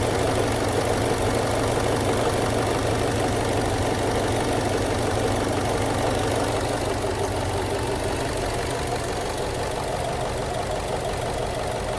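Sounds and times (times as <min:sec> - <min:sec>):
car engine idling: 0:00.0 - 0:11.9
engine knocking: 0:00.0 - 0:11.9.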